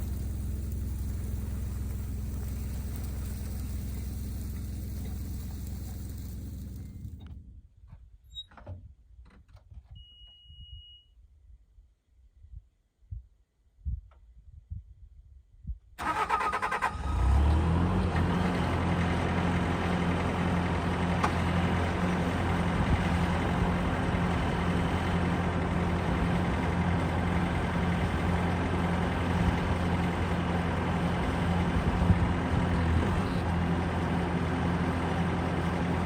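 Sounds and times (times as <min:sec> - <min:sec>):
engine idling: 0:00.0 - 0:07.2, 0:18.5 - 0:36.0
engine starter cranking: 0:00.0 - 0:07.2, 0:16.0 - 0:17.3.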